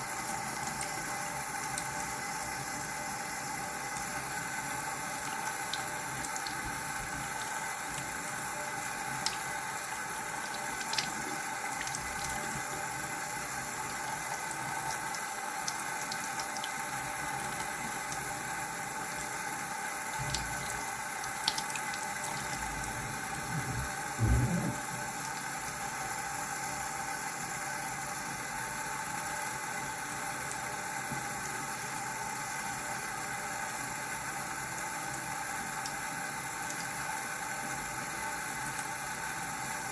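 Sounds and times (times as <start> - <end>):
tap running into sink: 20.2 - 25.0.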